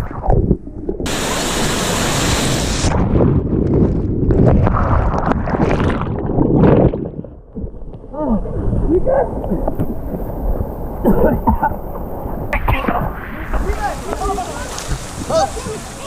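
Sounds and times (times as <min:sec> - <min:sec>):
muffled whitewater splashing: 0:00.0 - 0:16.0
muffled shouts: 0:15.3 - 0:16.0.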